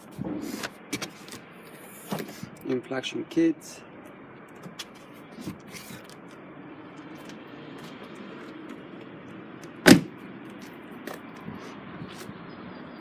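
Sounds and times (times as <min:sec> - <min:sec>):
car tailgate thump: 0:09.8 - 0:10.1.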